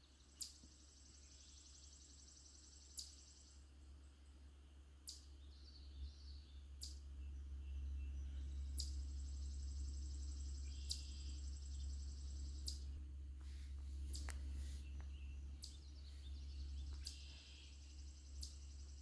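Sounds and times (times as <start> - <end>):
steady low rumble: 6.0 - 19.0.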